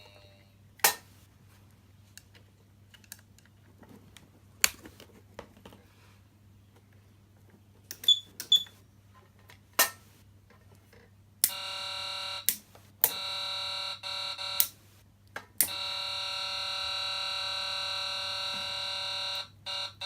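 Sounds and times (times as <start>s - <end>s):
steady buzzer tone: 11.4s - 15.0s, 15.6s - 20.0s.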